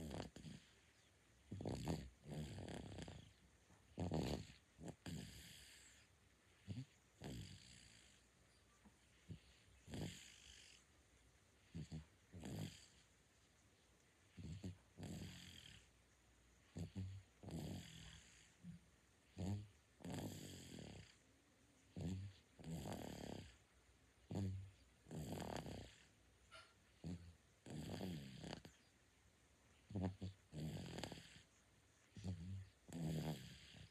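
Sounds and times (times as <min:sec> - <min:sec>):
baby snoring: 0:00.0 - 0:00.7, 0:01.5 - 0:08.2, 0:09.2 - 0:10.8, 0:11.6 - 0:13.0, 0:14.3 - 0:15.9, 0:16.7 - 0:18.6, 0:19.2 - 0:21.2, 0:21.9 - 0:23.6, 0:24.3 - 0:28.9, 0:29.9 - 0:31.5, 0:32.1 - 0:33.9
soft breath: 0:05.4 - 0:07.1, 0:07.8 - 0:12.1.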